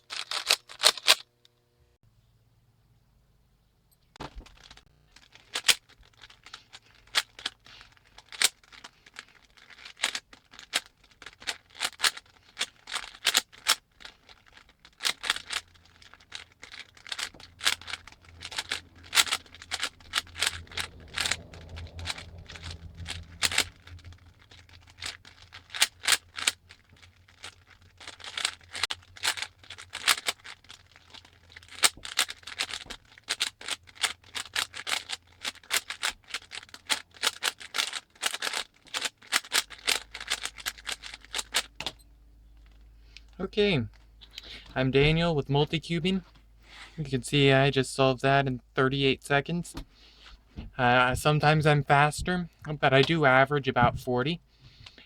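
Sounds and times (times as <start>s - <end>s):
low steady hum: 1.4s - 55.0s
plastic cube clicking: 4.2s - 42.0s.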